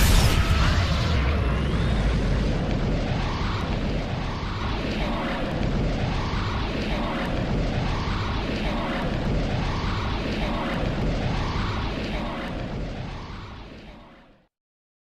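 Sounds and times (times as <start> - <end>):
magic power whoosh effect: 0.0 - 4.0
low rumble: 0.0 - 14.4.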